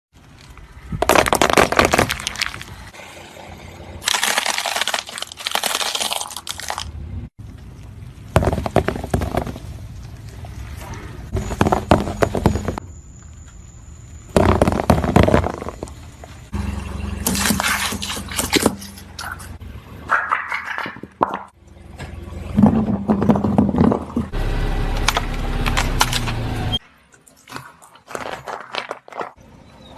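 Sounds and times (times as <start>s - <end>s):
objects cracking and crunching: 0.2s - 2.9s, 4.0s - 7.0s, 27.2s - 29.4s.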